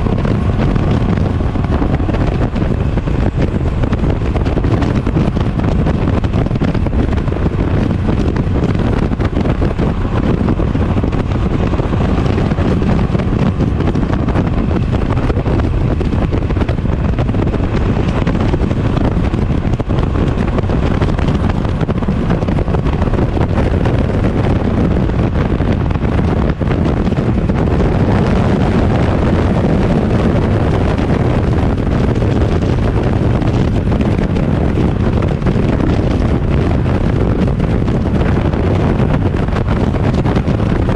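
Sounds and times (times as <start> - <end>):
motorcycle engine running: 0.0 - 40.9
wind buffeting microphone: 0.0 - 40.9.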